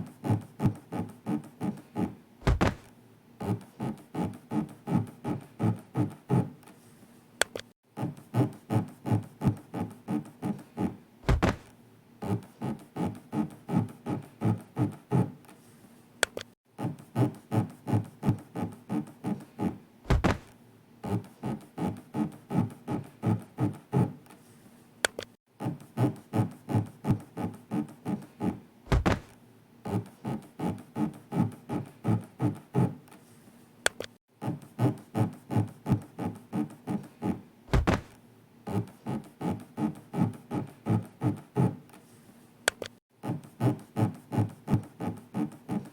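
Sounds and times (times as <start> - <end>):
low thud: 2.4 - 2.9, 11.3 - 11.7, 20.1 - 20.5, 28.9 - 29.3, 37.7 - 38.2.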